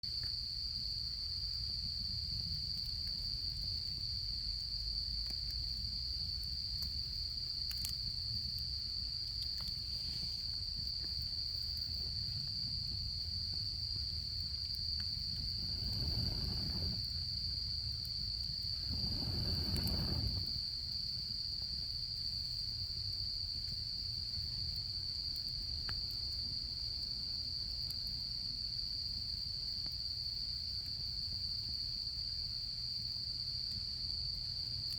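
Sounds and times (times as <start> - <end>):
crickets trilling: 0.1 - 34.9
campfire crackling clicks: 5.1 - 21.8, 24.4 - 27.1
low rumble: 15.4 - 17.0, 18.8 - 20.6.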